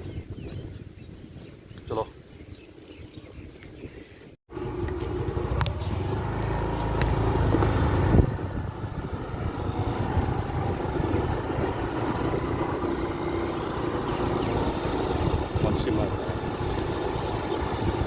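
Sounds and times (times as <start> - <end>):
motorcycle engine running: 4.5 - 18.0.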